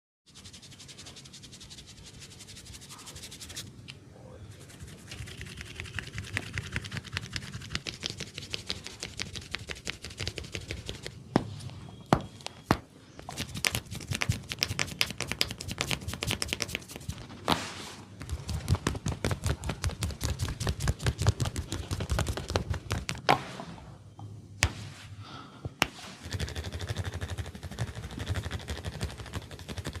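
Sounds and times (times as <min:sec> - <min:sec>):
fingers scratching hair and scalp: 0:04.5 - 0:11.2, 0:13.2 - 0:17.3, 0:25.8 - 0:30.0.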